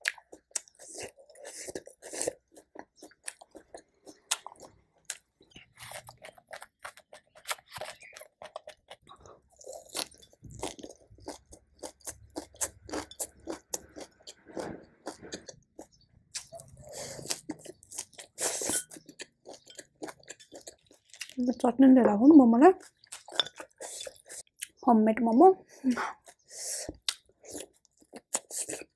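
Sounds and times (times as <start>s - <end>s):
person chewing food: 0.0s - 24.8s, 25.7s - 28.9s.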